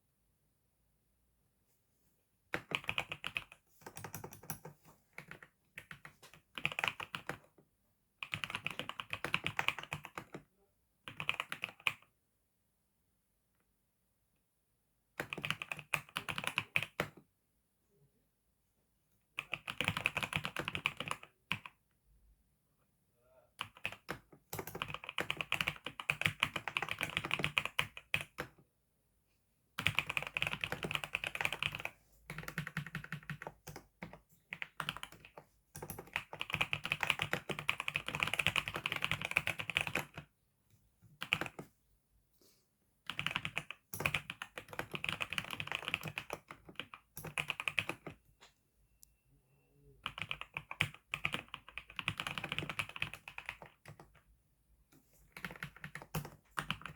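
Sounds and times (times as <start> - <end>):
keyboard typing clicks: 23.6 - 28.5, 43.1 - 49.1.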